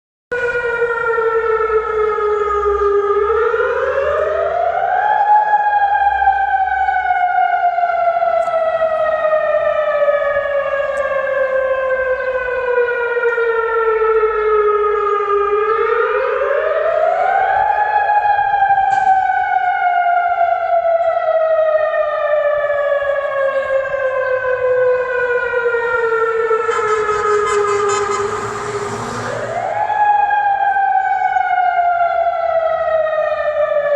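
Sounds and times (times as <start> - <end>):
warning siren wailing: 0.3 - 33.9.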